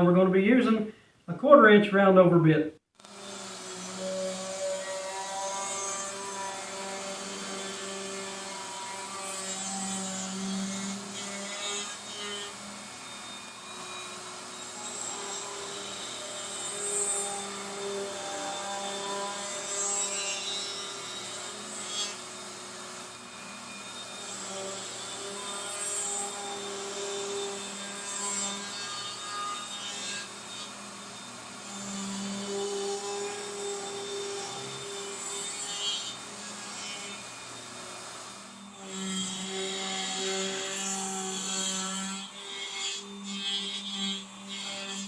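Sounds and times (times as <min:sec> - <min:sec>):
router motor hum: 0:03.0 - 0:04.8
router bit cutting wood: 0:03.0 - 0:45.0.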